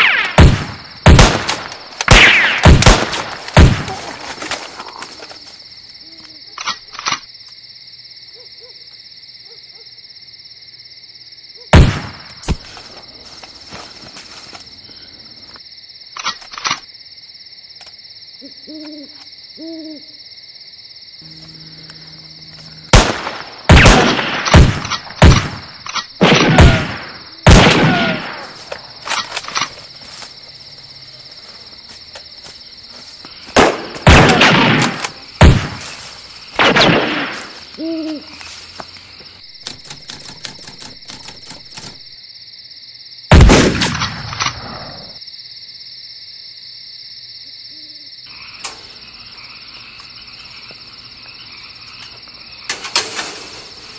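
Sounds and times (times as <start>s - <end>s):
loud gunshots with echo: 0.0s - 4.0s, 22.9s - 28.5s, 33.6s - 35.8s
insects chirping: 0.0s - 53.9s
owl hooting: 18.4s - 20.2s, 37.7s - 38.4s.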